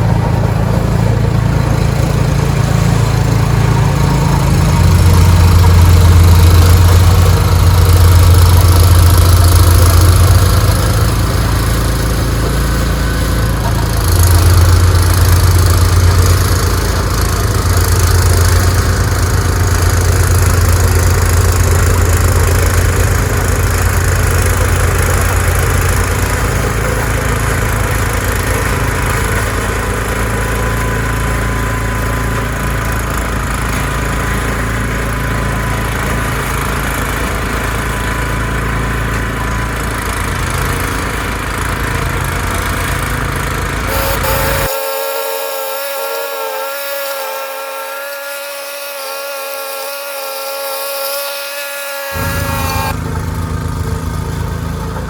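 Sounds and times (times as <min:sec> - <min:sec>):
snowblower engine running: 0:00.0 - 0:55.0
thin high whine: 0:43.9 - 0:51.2, 0:52.1 - 0:53.0.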